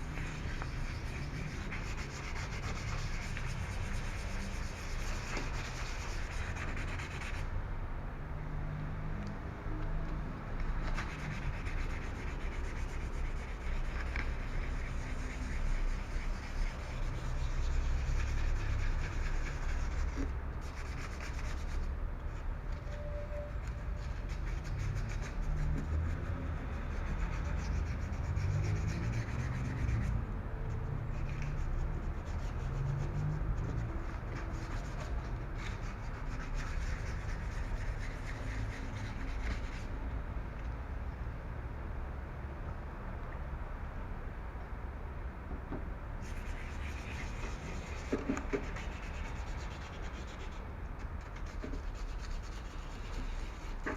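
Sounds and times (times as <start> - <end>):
sandpaper rubbing on car panel: 0.0 - 7.5, 10.9 - 21.9, 23.9 - 30.2, 31.1 - 40.0, 46.2 - 53.9.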